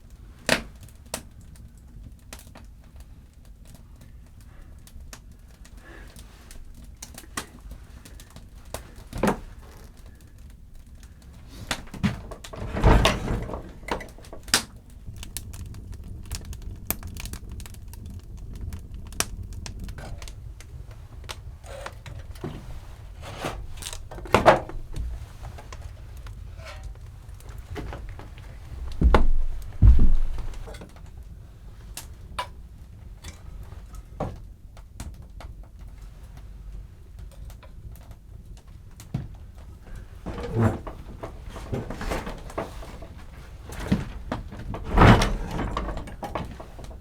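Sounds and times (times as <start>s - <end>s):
objects knocking and clattering: 11.4s - 15.3s, 21.7s - 31.0s, 39.9s - 47.0s.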